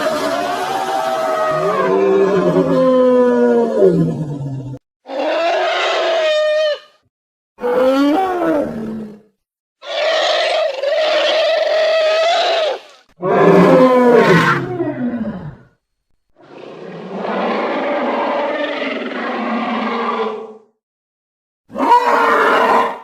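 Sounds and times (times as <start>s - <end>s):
long pitched animal calls: 5.1s - 7.0s, 9.8s - 15.4s.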